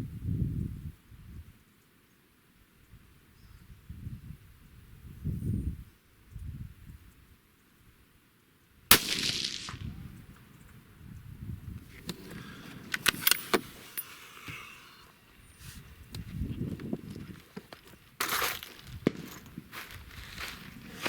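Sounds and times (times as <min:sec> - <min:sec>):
rifle shot with echo: 0:08.9 - 0:10.2.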